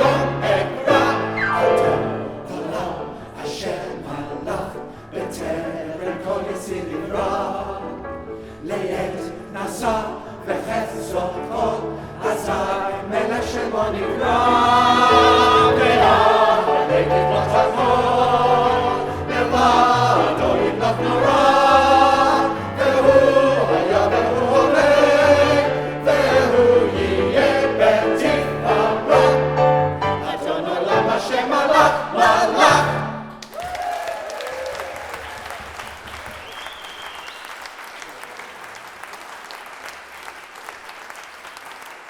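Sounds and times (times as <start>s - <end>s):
instrumental accompaniment: 0.0s - 3.0s
choir singing: 0.0s - 33.4s.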